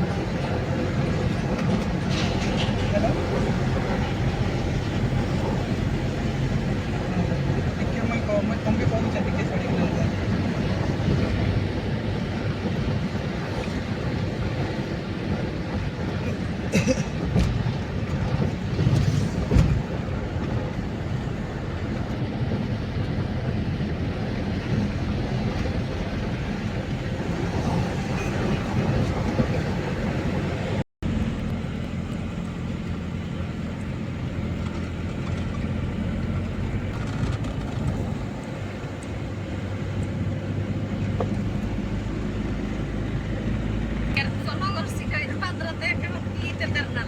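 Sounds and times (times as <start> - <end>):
vehicle engine rumbling: 0.0 - 47.0.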